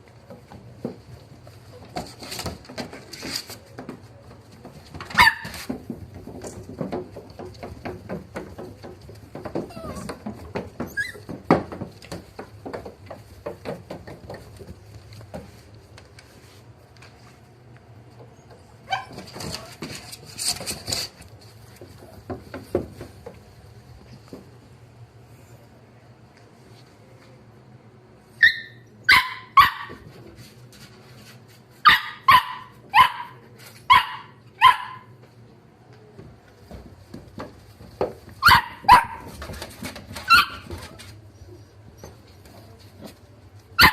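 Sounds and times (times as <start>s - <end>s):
puppies scuffling: 0.0s - 25.6s, 28.4s - 43.9s
puppy yapping: 5.1s - 5.6s, 9.6s - 11.4s, 28.4s - 30.0s, 31.8s - 35.1s, 38.4s - 39.4s
puppy squeak: 9.7s - 10.1s, 10.8s - 11.3s, 28.4s - 29.4s.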